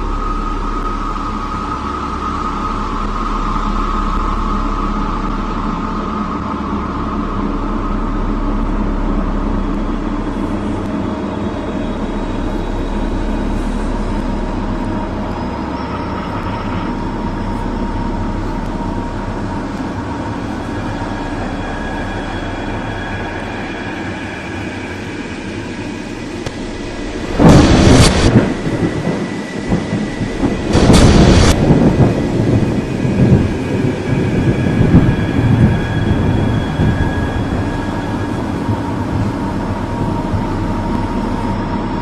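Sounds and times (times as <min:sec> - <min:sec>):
low rumbling drone: 0:00.0 - 0:42.0
continuous hiss: 0:24.9 - 0:33.4.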